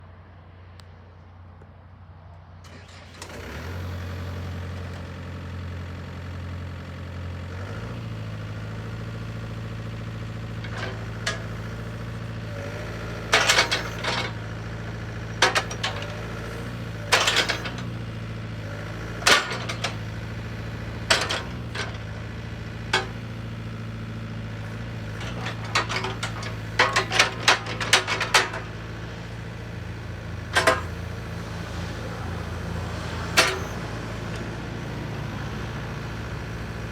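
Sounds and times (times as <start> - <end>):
diesel engine running: 2.6 - 36.9
loud metallic clanks: 13.3 - 14.4, 15.4 - 17.9, 19.1 - 22.1, 25.1 - 28.9, 30.4 - 31.4, 33.3 - 33.8.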